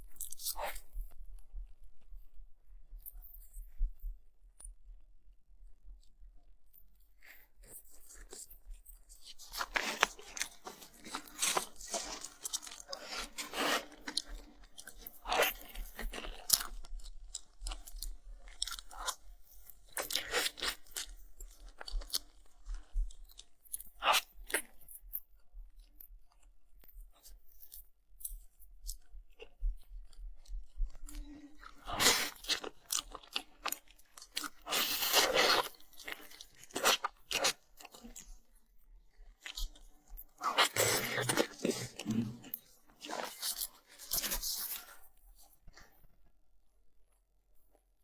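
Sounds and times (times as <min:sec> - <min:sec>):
chewing and crunching food: 0:00.0 - 0:01.5, 0:06.7 - 0:46.4.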